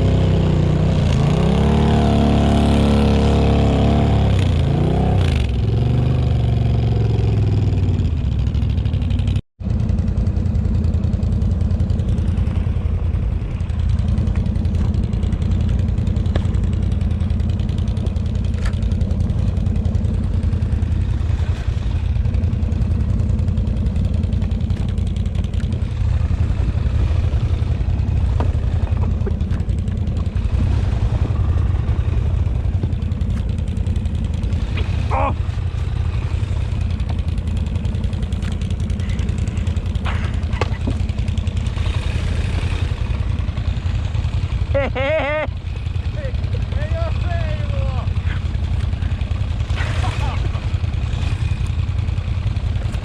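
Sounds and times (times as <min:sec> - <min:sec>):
atv engine droning: 0:00.0 - 0:53.0.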